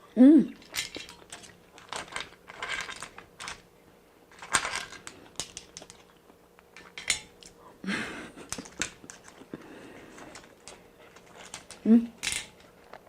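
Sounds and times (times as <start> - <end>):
shells and utensils clinking on dish: 0.6 - 3.6, 6.8 - 7.5.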